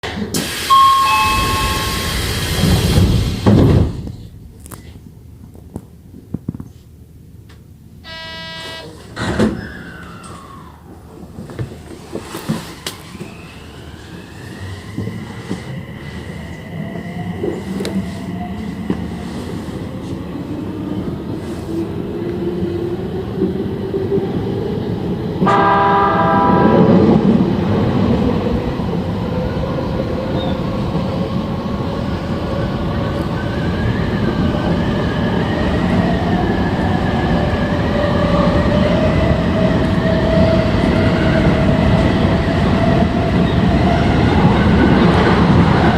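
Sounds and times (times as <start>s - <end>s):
electric train inverter whine: 0.3s - 4.2s, 7.9s - 11.7s
train horn blast: 8.0s - 9.0s, 25.4s - 27.2s
wheel and track noise: 9.0s - 20.2s.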